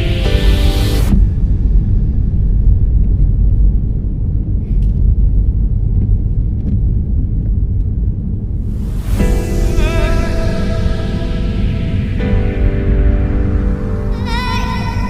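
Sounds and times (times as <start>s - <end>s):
music with held tones: 0.0s - 1.3s, 9.1s - 15.0s.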